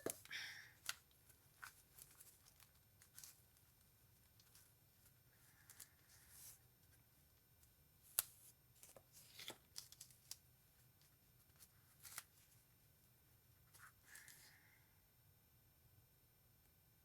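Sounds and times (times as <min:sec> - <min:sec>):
soft rustling of craft materials: 0:00.0 - 0:15.0.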